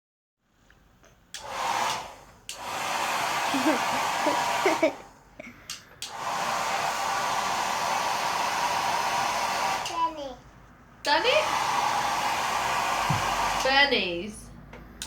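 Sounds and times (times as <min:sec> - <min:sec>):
hair dryer blowing: 0:01.4 - 0:05.2, 0:06.0 - 0:10.0, 0:11.1 - 0:14.2.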